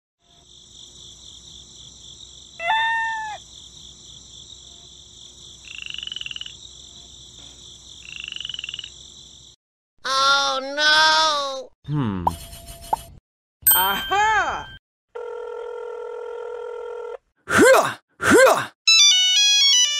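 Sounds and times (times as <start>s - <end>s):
frogs croaking in trills: 0.2s - 9.6s
high-pitched insect buzz: 0.2s - 9.6s.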